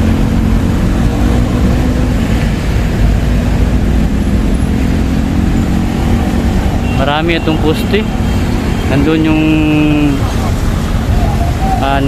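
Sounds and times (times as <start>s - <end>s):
road traffic rumble: 0.0s - 12.0s
vehicle engines running: 0.0s - 12.0s.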